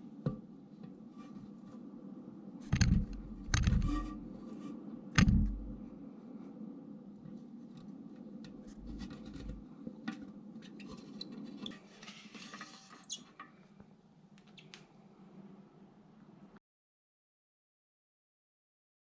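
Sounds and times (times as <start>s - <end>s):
scratchy rubbing: 2.7s - 5.8s, 8.7s - 9.6s
small clicks and squeaks: 10.7s - 12.1s, 12.9s - 13.6s, 14.4s - 14.9s.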